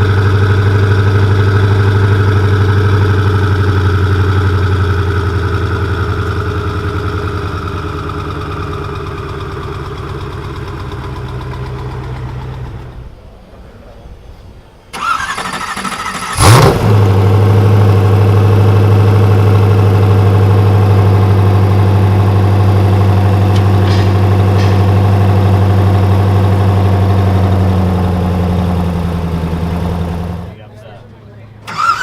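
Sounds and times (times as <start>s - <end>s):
car engine revving and idling: 0.0s - 13.2s, 15.2s - 30.7s
engine starter cranking: 14.9s - 17.0s, 23.0s - 26.5s, 31.6s - 32.0s.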